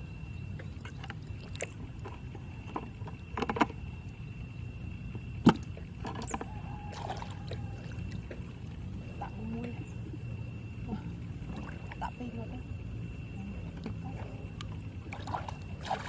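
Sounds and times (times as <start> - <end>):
water splashing: 6.8 - 9.6, 15.0 - 16.0.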